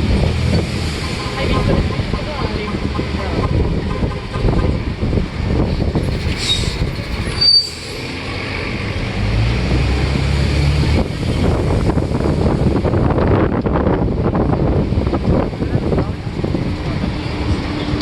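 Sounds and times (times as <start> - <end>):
bus engine and road noise: 0.0 - 18.0
brief high squeal: 6.0 - 8.1.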